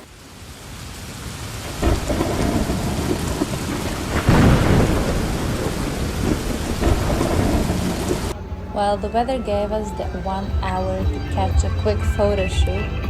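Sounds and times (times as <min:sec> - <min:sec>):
heavy rain falling: 0:00.0 - 0:08.7
thunder rumbling: 0:00.0 - 0:12.8.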